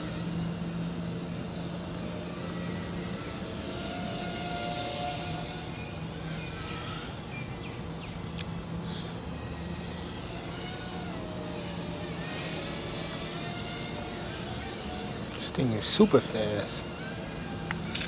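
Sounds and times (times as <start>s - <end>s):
crickets chirping: 0.0s - 18.0s
drone motors whining: 0.0s - 18.0s.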